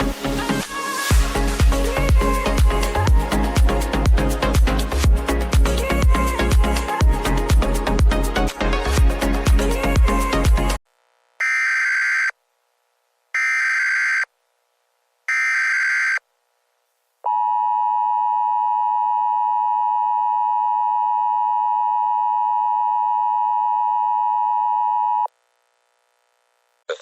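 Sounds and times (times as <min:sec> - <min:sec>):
screeching digital data bursts: 0:11.4 - 0:12.4, 0:13.4 - 0:14.3, 0:15.3 - 0:16.2.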